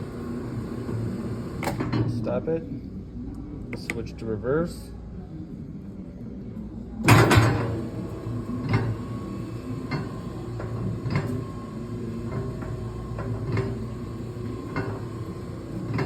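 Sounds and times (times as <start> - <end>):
mixer motor hum: 0.0 - 1.8, 7.5 - 16.0
mixer motor clunk: 0.5 - 2.1, 7.0 - 16.0.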